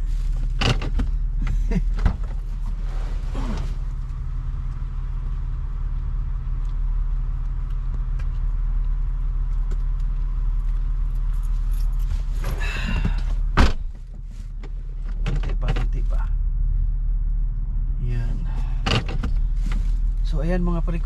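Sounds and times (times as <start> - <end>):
car engine idling: 0.0 - 21.0.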